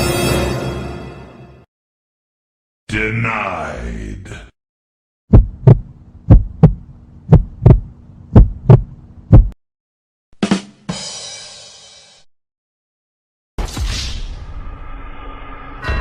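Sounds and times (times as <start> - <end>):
heartbeat thumps: 5.3 - 9.6
faint steady hum: 5.6 - 9.5.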